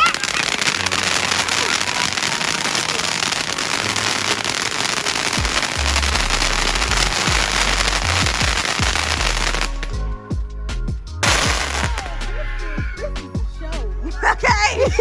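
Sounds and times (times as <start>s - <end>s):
fireworks crackling: 0.0s - 10.4s, 11.2s - 15.0s
fireworks deep booms: 0.2s - 13.5s.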